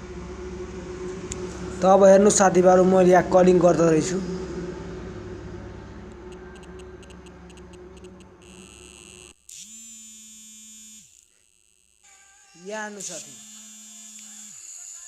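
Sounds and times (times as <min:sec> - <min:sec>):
low steady hum: 0:00.0 - 0:09.4
phone vibrating: 0:06.1 - 0:12.6.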